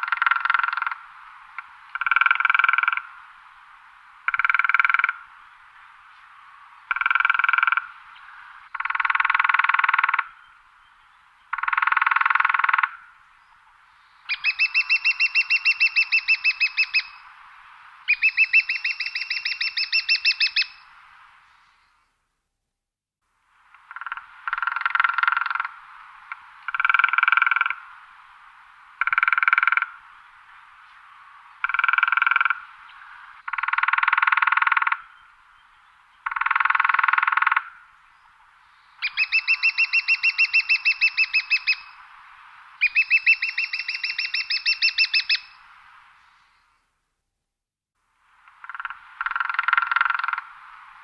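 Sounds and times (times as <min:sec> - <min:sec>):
woodpecker drumming on wood: 0:04.3 - 0:05.2, 0:06.9 - 0:07.9, 0:08.7 - 0:10.3, 0:23.8 - 0:25.7, 0:29.0 - 0:29.9, 0:33.5 - 0:35.1, 0:36.2 - 0:37.7, 0:48.5 - 0:50.5.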